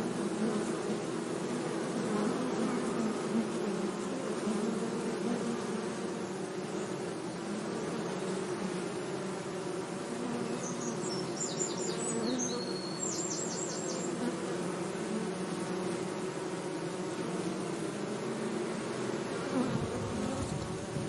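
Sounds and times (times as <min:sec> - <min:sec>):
bees buzzing: 0:00.0 - 0:21.0
bird chirping: 0:10.4 - 0:14.2.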